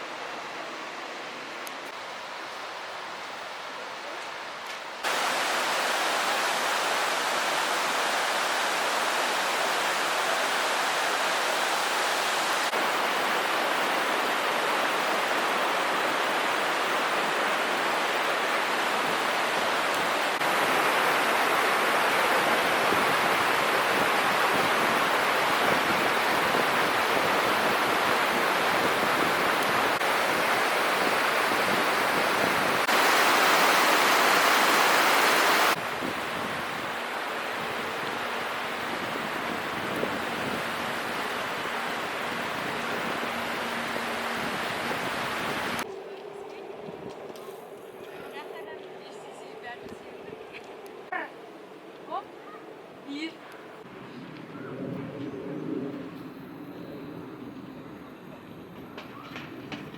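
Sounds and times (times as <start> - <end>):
fast-flowing water rushing: 5.0 - 45.9.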